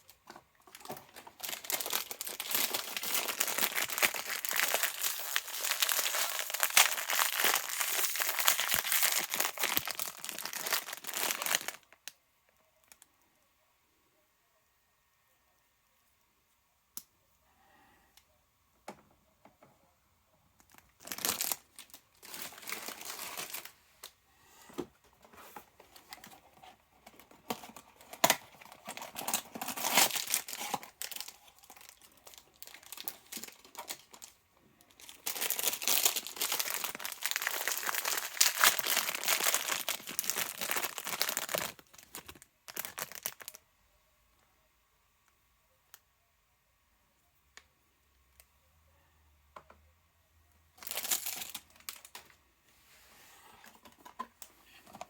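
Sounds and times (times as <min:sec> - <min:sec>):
packaging crinkling and tearing: 0:00.0 - 0:12.1, 0:20.6 - 0:24.1, 0:25.4 - 0:43.6, 0:50.8 - 0:52.3.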